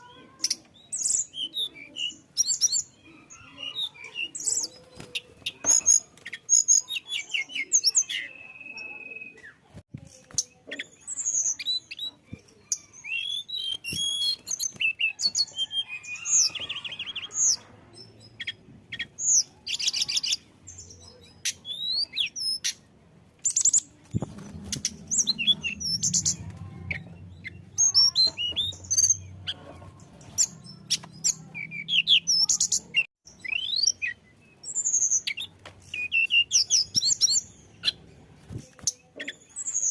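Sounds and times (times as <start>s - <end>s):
bird chirping and trilling: 0.0s - 38.2s
faint low hum: 23.9s - 32.9s.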